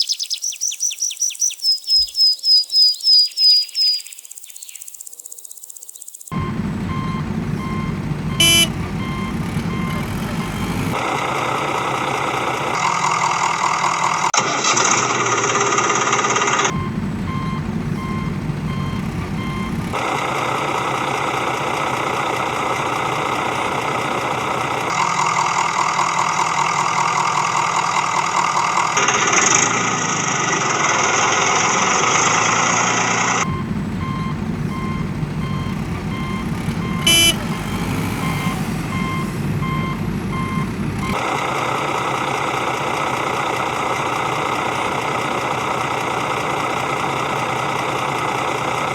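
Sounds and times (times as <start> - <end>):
construction vehicle engine running: 6.3 - 48.9
reversing beeper: 6.4 - 11.0, 16.7 - 20.0, 33.4 - 41.2
short loud tone: 8.3 - 11.0, 36.8 - 39.4.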